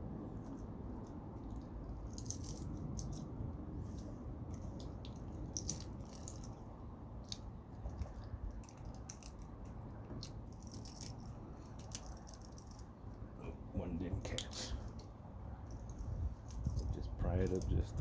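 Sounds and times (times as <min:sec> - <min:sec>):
steady low hum: 0:00.0 - 0:18.0
small metal clicks: 0:07.2 - 0:12.9.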